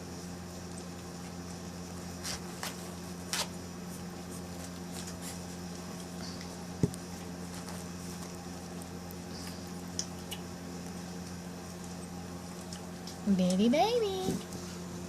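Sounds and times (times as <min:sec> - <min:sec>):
steady low hum: 0:00.0 - 0:15.0
puppy pattering and scuffling: 0:02.2 - 0:06.2, 0:06.8 - 0:09.0.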